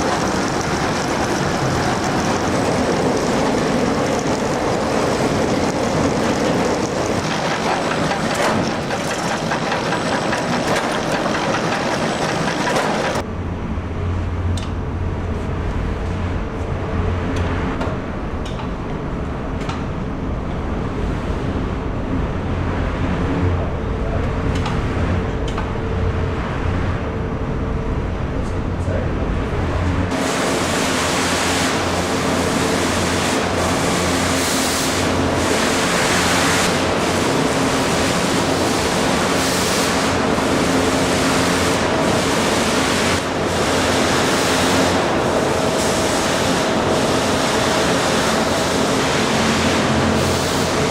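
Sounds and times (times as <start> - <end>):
sawmill machinery running: 0.0 - 13.3, 29.2 - 50.9.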